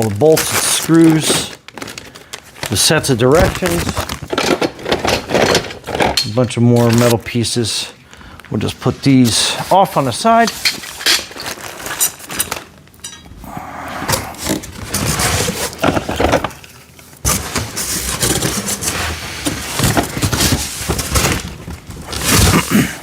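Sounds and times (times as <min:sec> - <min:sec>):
plastic bins and metal clattering: 0:00.0 - 0:07.2, 0:14.4 - 0:23.0.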